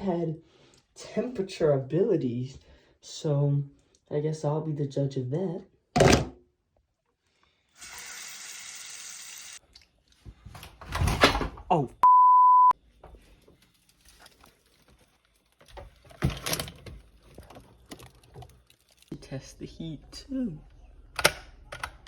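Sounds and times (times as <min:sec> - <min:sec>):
censor bleep: 0:12.0 - 0:12.8.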